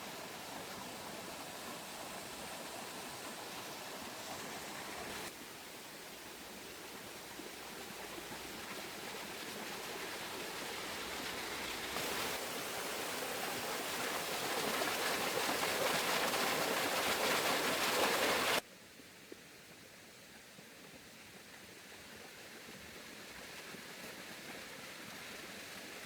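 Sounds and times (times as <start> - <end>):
running water rushing: 0.0 - 18.6.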